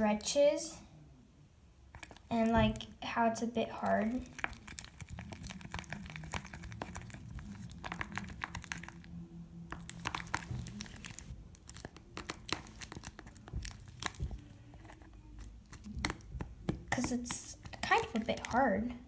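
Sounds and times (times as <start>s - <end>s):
slime crackling and tearing: 2.0s - 3.0s, 3.8s - 18.8s.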